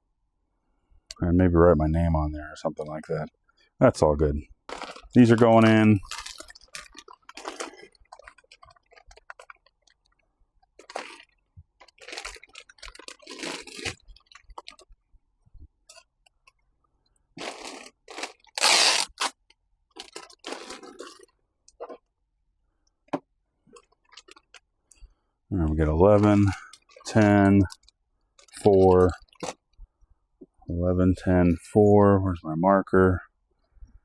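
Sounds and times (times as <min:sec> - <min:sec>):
plastic packaging crinkling: 0:04.7 - 0:10.1, 0:10.8 - 0:14.9, 0:17.4 - 0:22.0.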